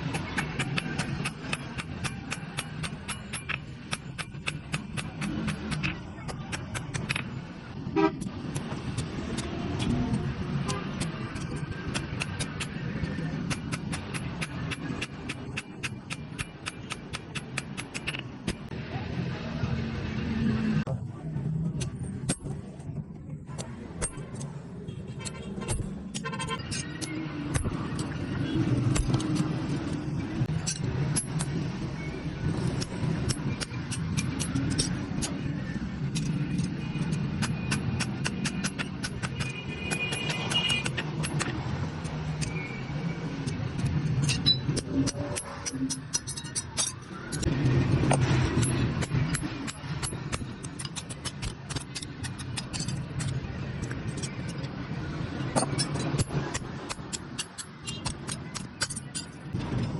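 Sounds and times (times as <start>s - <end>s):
hammer striking steel: 0.0s - 7.4s, 8.1s - 18.7s, 30.5s - 31.7s, 32.7s - 35.4s, 36.1s - 42.7s, 43.4s - 54.6s, 55.5s - 59.9s.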